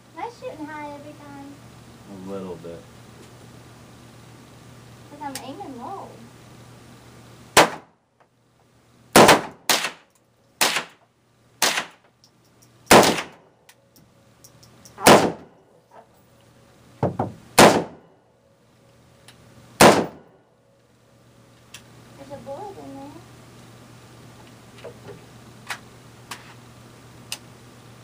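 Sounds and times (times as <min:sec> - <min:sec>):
rifle shots: 0:07.6 - 0:07.9, 0:09.1 - 0:11.0, 0:11.6 - 0:12.0, 0:12.9 - 0:13.4, 0:15.0 - 0:15.6, 0:17.6 - 0:18.0, 0:19.8 - 0:20.3.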